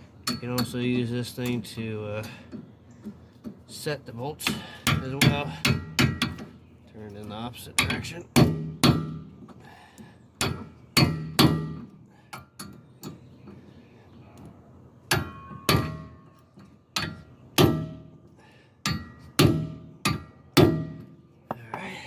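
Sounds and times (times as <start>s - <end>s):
hammer striking metal: 15.1s - 16.2s.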